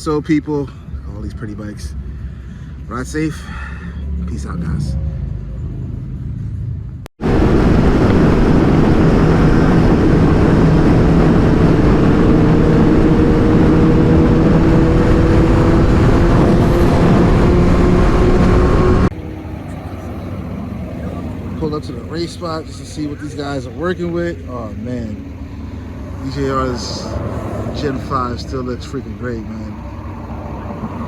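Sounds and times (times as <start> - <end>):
rushing wind noise: 7.2 - 19.2
motorcycle engine at high speed: 7.2 - 31.0.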